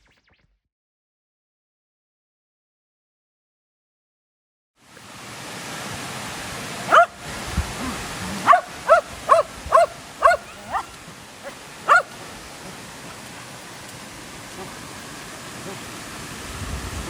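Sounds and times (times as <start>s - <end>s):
dog barking: 6.9s - 7.2s, 8.3s - 12.2s.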